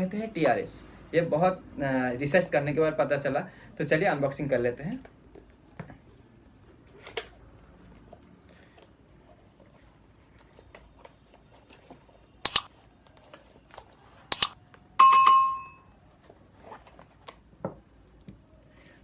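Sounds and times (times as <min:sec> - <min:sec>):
faint rustling and handling: 0:04.4 - 0:14.3, 0:16.1 - 0:17.6
sharp double clicks: 0:12.5 - 0:12.7, 0:14.3 - 0:14.6
bright bell-like ding: 0:15.0 - 0:15.8.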